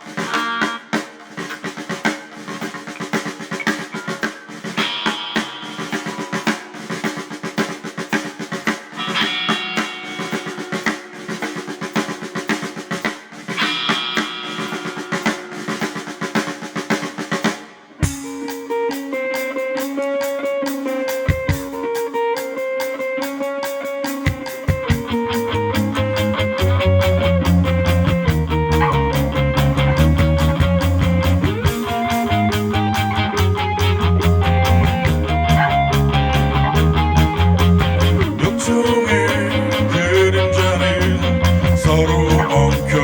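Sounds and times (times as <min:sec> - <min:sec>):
rock band playing: 0:00.0 - 0:43.0
electric guitar ringing notes: 0:18.0 - 0:43.0
drum kit snare rolls: 0:24.3 - 0:43.0.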